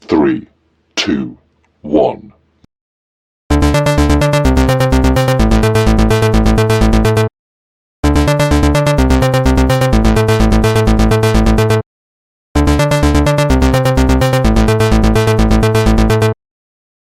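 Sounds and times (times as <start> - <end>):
electronic music with fast beat: 3.5 - 7.3, 8.0 - 11.8, 12.6 - 16.4.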